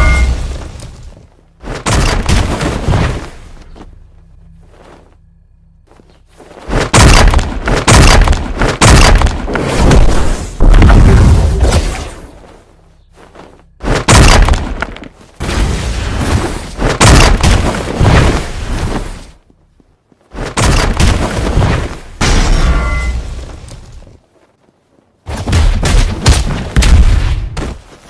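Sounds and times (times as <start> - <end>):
loud metal bangs and crashes: 0.0 - 0.7.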